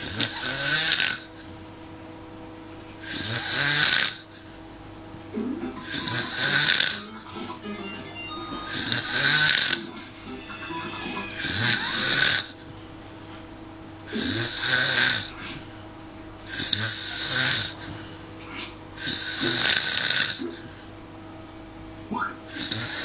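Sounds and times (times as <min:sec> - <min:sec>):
person snoring: 0:05.7 - 0:07.1, 0:11.2 - 0:12.6
quiet breathing: 0:14.1 - 0:21.0.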